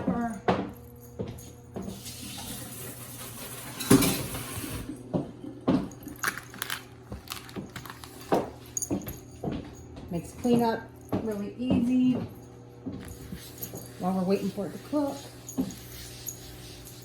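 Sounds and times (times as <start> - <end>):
dishes and utensils clinking: 1.8 - 4.9
kitchen tap running: 1.9 - 4.9.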